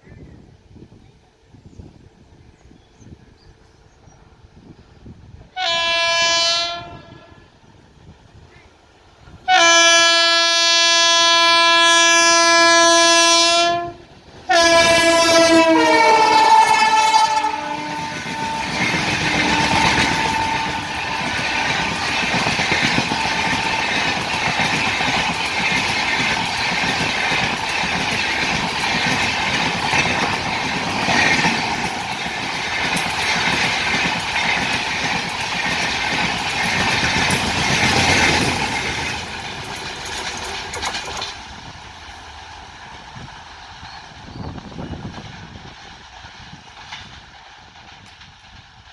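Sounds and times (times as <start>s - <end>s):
locomotive horn blasts: 5.6s - 7.6s, 9.5s - 22.1s, 23.0s - 24.3s
train wheels on rail: 10.8s - 48.9s.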